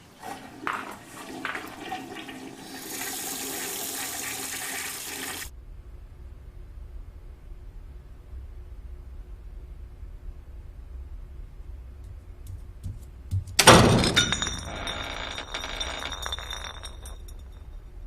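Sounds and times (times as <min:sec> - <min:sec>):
tinkling debris: 0:13.8 - 0:17.7.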